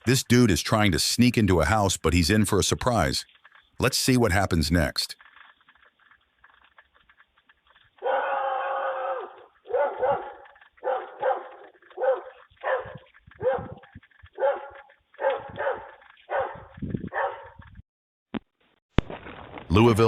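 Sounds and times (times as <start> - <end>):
dog barking: 8.0 - 8.4, 9.0 - 17.6.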